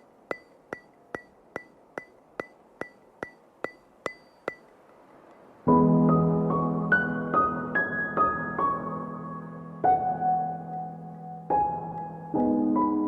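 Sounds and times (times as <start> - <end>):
clock-like ringing ticks: 0.3 - 5.4.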